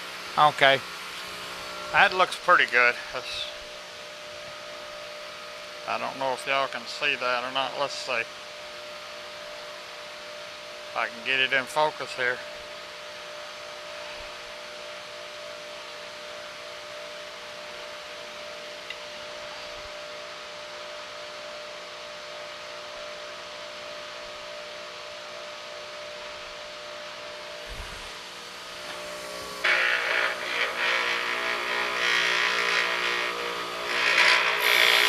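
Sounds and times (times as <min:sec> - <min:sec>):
electric motor humming: 0:27.6 - 0:35.0.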